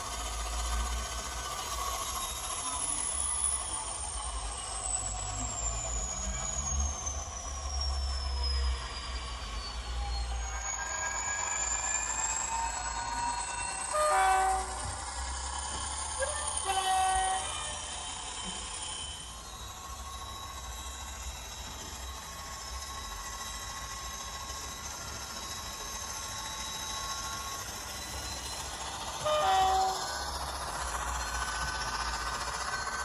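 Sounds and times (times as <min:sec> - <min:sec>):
locomotive horn blasts: 0:29.3 - 0:30.0.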